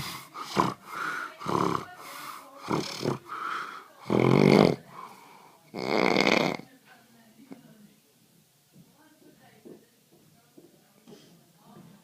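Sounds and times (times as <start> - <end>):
man snoring: 0.0 - 0.8, 5.8 - 6.6.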